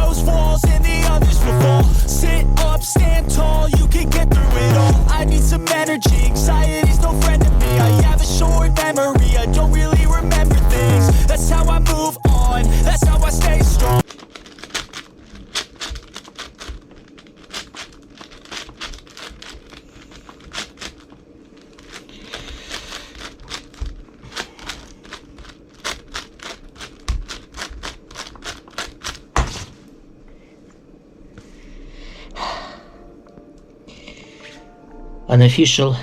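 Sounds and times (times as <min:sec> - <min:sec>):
puzzle cube clicking: 0:14.0 - 0:29.5.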